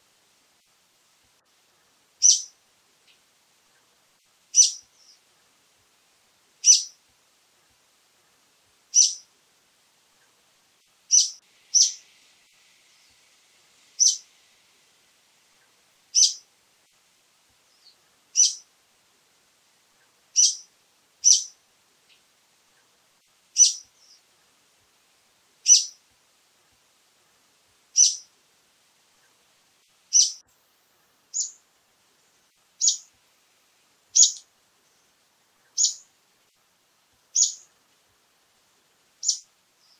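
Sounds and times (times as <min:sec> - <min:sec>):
bird giving sharp high calls: 0:02.2 - 0:02.5, 0:04.6 - 0:04.8, 0:06.6 - 0:07.0, 0:16.2 - 0:16.4, 0:18.4 - 0:18.6, 0:20.4 - 0:20.6, 0:21.2 - 0:21.5, 0:23.6 - 0:24.2, 0:25.7 - 0:26.0, 0:30.1 - 0:30.4, 0:32.8 - 0:33.1, 0:34.2 - 0:34.4, 0:35.8 - 0:36.0, 0:37.4 - 0:37.6.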